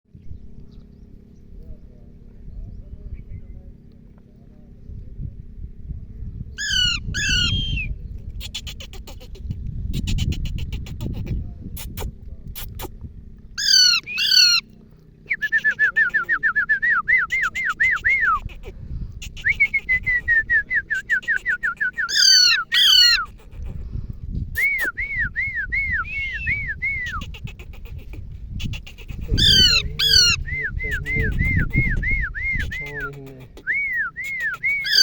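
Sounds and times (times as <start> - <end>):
bird singing: 6.6 - 8.8, 13.6 - 14.7, 21.1 - 23.2, 29.3 - 33.2.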